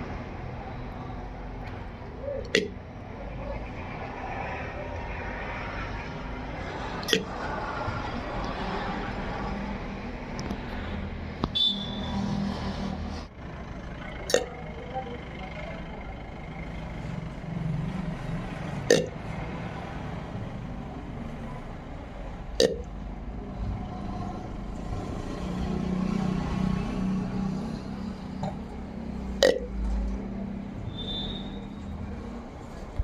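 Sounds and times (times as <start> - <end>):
woman hiccuping: 18.9 - 19.2.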